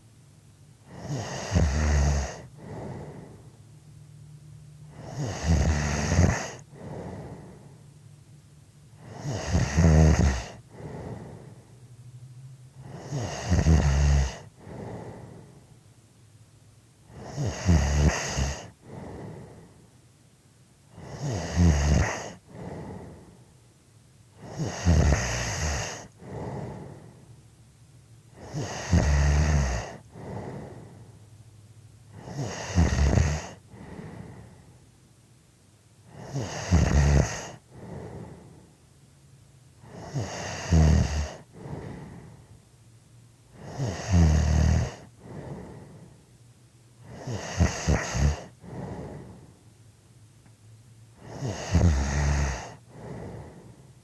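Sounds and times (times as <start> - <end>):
person snoring: 0.9 - 3.4, 4.9 - 7.6, 9.0 - 11.5, 12.8 - 15.5, 17.1 - 19.7, 21.0 - 23.4, 24.4 - 27.1, 28.4 - 31.0, 32.2 - 34.6, 36.1 - 38.6, 39.8 - 42.4, 43.6 - 46.1, 47.0 - 49.5, 51.2 - 53.8.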